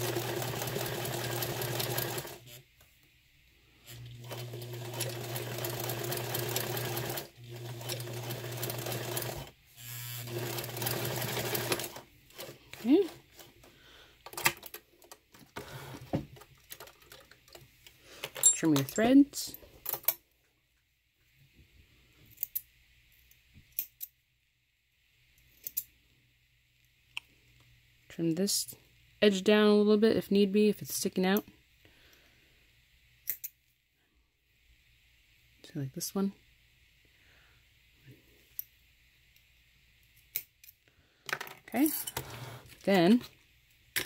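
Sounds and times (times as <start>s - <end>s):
sewing machine stitching vinyl: 0.0s - 2.6s, 3.9s - 13.5s.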